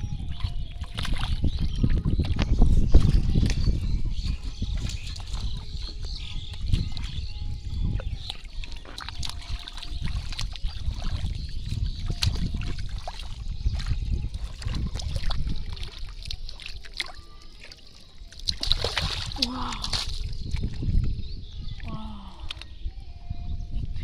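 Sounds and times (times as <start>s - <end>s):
shallow water splashing: 3.0s - 21.0s
water dripping: 4.7s - 20.9s.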